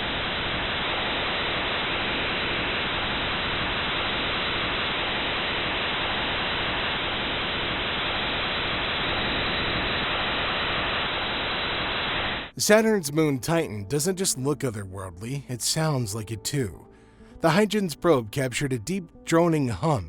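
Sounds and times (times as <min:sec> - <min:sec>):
steady static-like noise: 0:00.0 - 0:12.9.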